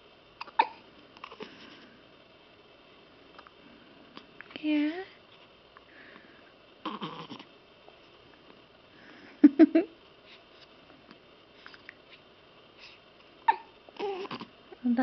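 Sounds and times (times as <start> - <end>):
baby hiccuping: 0.4 - 1.4, 6.8 - 7.5, 13.4 - 14.5.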